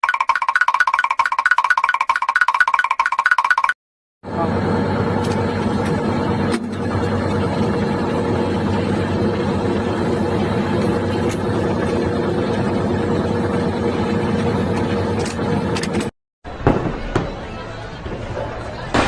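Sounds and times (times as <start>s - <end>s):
vehicle engine humming: 4.2s - 16.1s.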